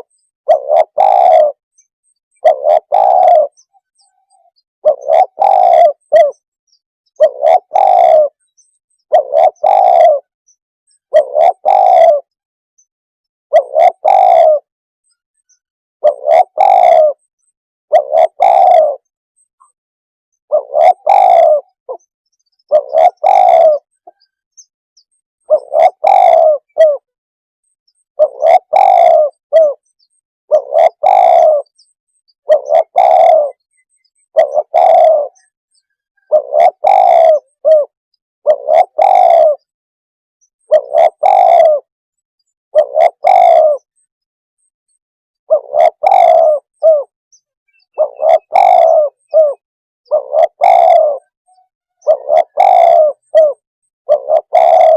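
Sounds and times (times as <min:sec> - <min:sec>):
dove cooing: 0:00.0 - 0:01.6, 0:02.4 - 0:06.4, 0:07.1 - 0:10.3, 0:11.0 - 0:12.4, 0:13.5 - 0:14.7, 0:16.0 - 0:17.3, 0:17.9 - 0:19.1, 0:20.5 - 0:24.4, 0:25.4 - 0:27.1, 0:28.2 - 0:29.9, 0:30.5 - 0:39.7, 0:40.6 - 0:41.9, 0:42.7 - 0:44.0, 0:45.5 - 0:47.1, 0:47.7 - 0:54.9.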